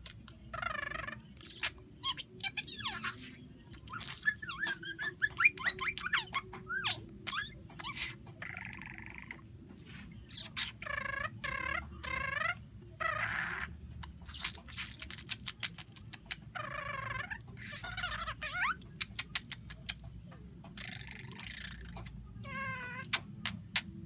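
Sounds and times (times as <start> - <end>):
budgerigar chirping and squawking: 0.0 - 24.0
budgerigar clicking: 10.3 - 24.0.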